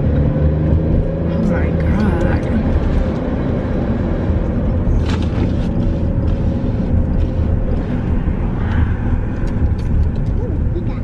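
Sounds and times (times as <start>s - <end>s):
car engine and road noise: 0.0s - 11.0s.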